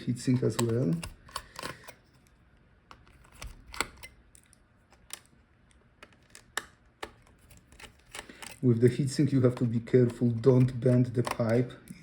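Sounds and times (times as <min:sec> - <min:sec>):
screwdriver clicking on metal parts: 0:07.7 - 0:11.6.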